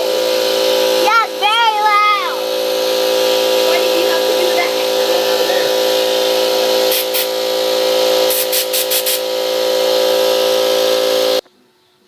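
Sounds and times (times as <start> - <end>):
fidget spinner high whine: 0.0 - 11.4
compressed air hiss: 2.4 - 11.4.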